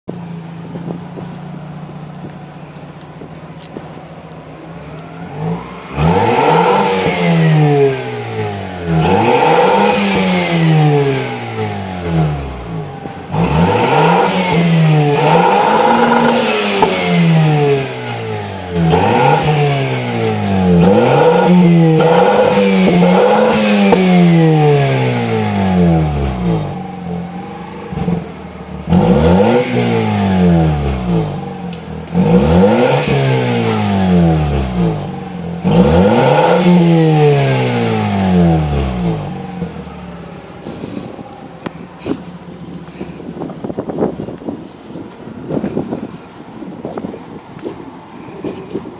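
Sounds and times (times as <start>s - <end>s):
rotary engine idling and revving: 0.0s - 48.9s.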